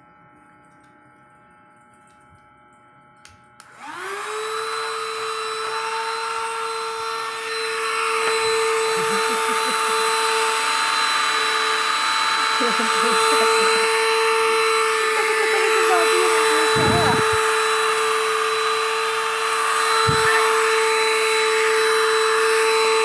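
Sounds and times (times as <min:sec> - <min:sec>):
vacuum cleaner switch click: 0:03.2 - 0:04.0
vacuum cleaner motor whine: 0:03.6 - 0:23.0.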